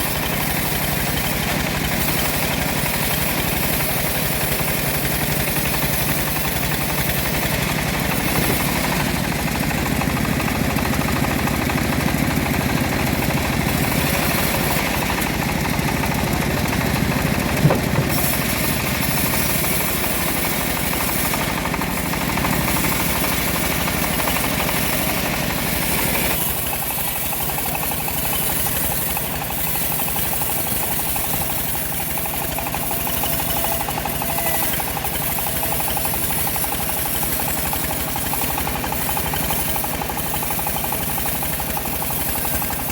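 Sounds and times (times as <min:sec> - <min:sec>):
bandsaw sawmill running: 0:00.0 - 0:42.9
sharp knock: 0:17.6 - 0:18.1.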